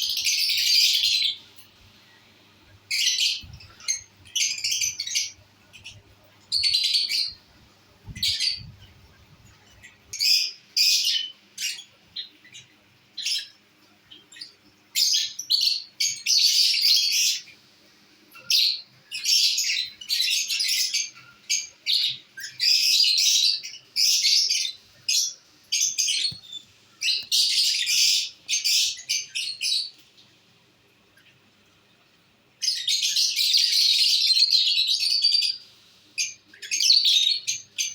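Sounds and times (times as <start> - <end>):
lovebirds chirping: 0.0 - 17.6, 18.3 - 30.2.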